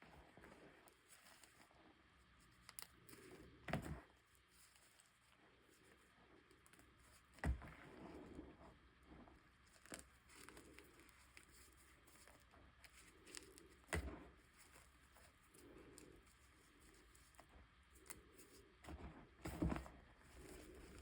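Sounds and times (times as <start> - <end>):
chalk snapping and crumbling: 2.4 - 3.5, 9.7 - 18.7.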